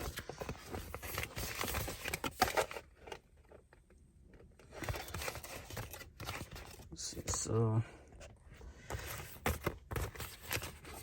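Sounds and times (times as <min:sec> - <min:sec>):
packaging rustling: 0:00.0 - 0:03.6, 0:04.6 - 0:06.9, 0:08.9 - 0:11.0.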